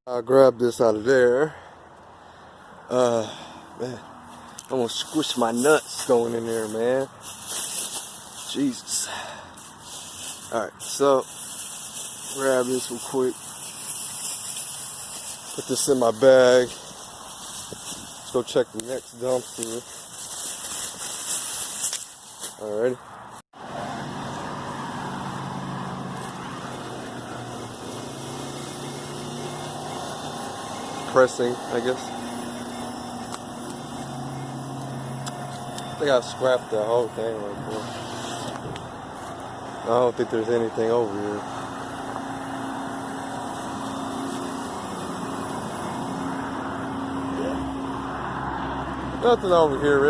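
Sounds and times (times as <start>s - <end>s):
road noise: 0.1s - 50.0s
steady mechanical hum: 23.6s - 48.1s
car engine running: 23.6s - 50.0s.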